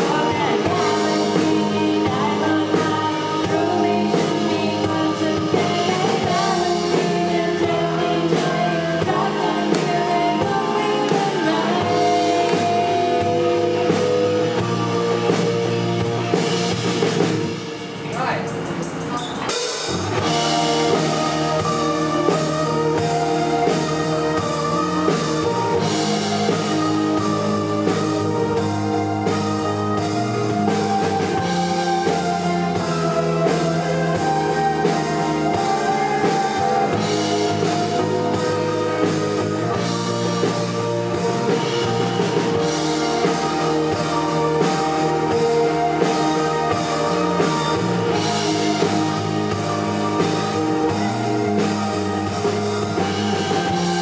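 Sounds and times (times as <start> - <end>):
drum beat: 0.0 - 54.0
guitar: 0.0 - 54.0
sustained synth chords: 20.2 - 54.0.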